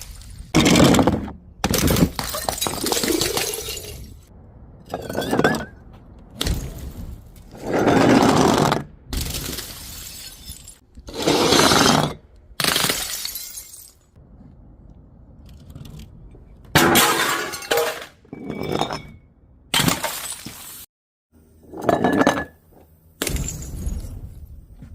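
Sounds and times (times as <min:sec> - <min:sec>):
glass bottles shattering: 0:01.8 - 0:04.2, 0:09.2 - 0:10.8, 0:12.7 - 0:14.0, 0:16.8 - 0:19.2, 0:19.8 - 0:20.8.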